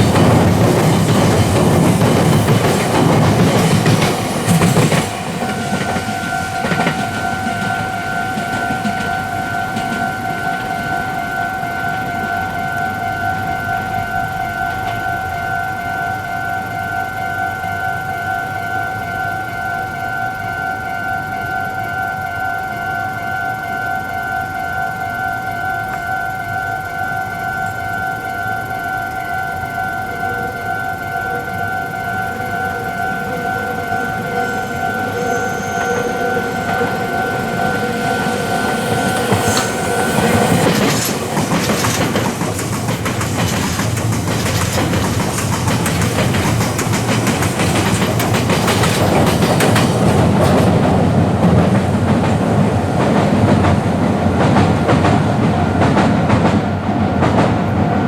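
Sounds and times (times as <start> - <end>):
train wheels clattering over rails: 0.0 - 12.9, 28.9 - 58.0
level crossing alarm ringing: 0.0 - 58.0.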